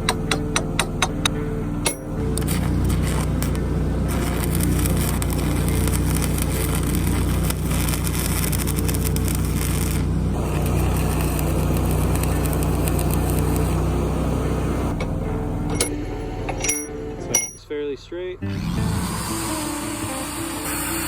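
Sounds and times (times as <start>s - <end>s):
welder engine running: 0.0s - 17.6s, 18.8s - 21.0s
arc welding crackle on steel: 2.0s - 15.0s.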